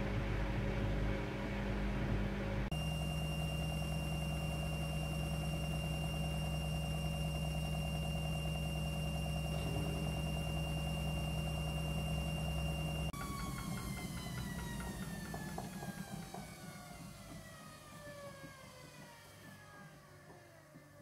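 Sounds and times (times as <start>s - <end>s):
washing machine running: 0.0s - 21.0s.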